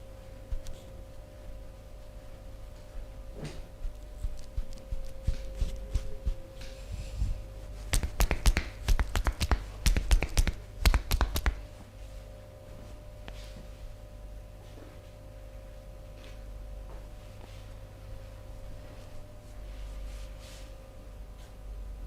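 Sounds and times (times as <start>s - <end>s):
rapid hand slaps and taps: 7.9s - 11.6s.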